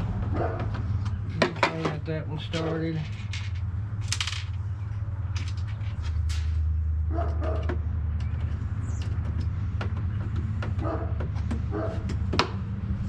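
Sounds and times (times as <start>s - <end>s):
dog barking: 0.3s - 0.8s, 7.1s - 7.7s, 10.8s - 12.2s.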